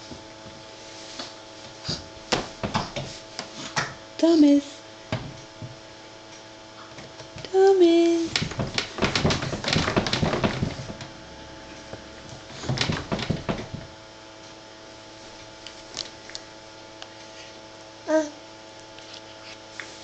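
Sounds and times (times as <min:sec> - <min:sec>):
faint steady hum: 0:00.0 - 0:20.0
knocking and clattering: 0:02.3 - 0:03.1, 0:08.3 - 0:11.2, 0:12.2 - 0:14.0.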